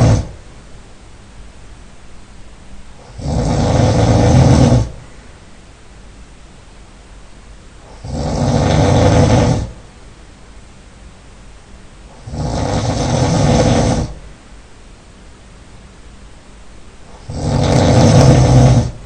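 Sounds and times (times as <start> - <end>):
man snoring loudly: 0.0 - 0.4, 3.0 - 5.0, 7.8 - 9.8, 12.1 - 14.2, 17.1 - 19.0
quiet breathing: 2.9 - 5.5.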